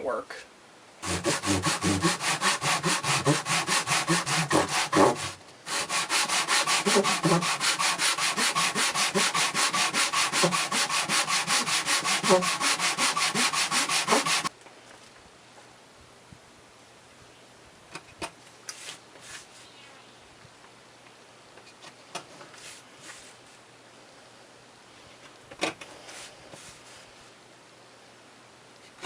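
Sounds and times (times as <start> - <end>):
hand sanding leather edges: 1.0 - 14.5.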